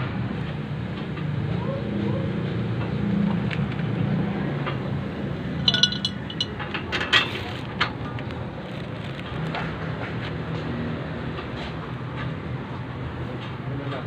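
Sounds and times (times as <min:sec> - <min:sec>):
metal tools clinking: 0:05.6 - 0:06.6.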